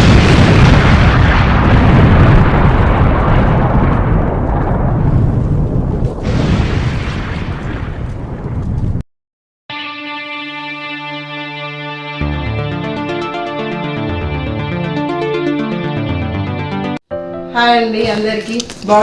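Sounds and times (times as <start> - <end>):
explosion-like boom and rumble: 0.0 - 9.0
music: 9.7 - 19.0.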